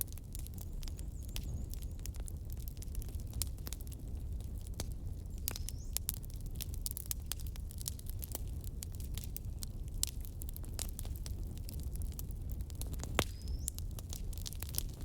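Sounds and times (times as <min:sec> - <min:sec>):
low rumble of burning: 0:00.0 - 0:15.0
wood fire crackling: 0:00.0 - 0:15.0.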